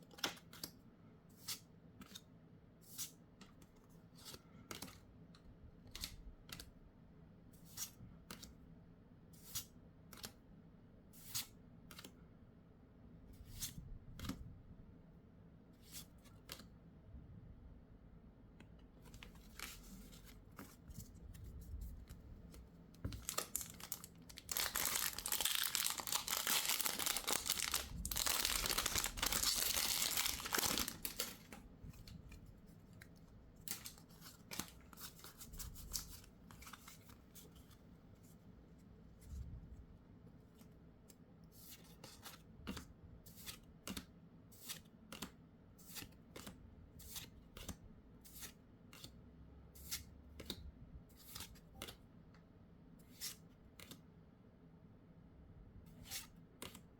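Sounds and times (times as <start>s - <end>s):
trading cards clicking and rustling: 23.0s - 32.4s
packaging tearing and crinkling: 23.2s - 31.5s.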